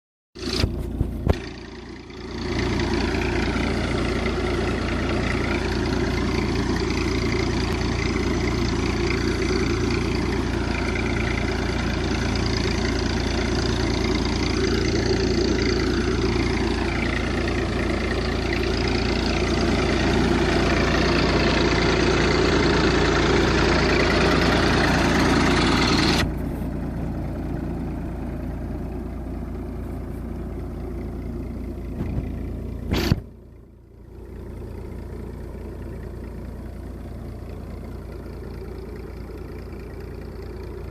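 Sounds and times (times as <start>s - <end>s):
tractor engine running: 0.4s - 40.9s.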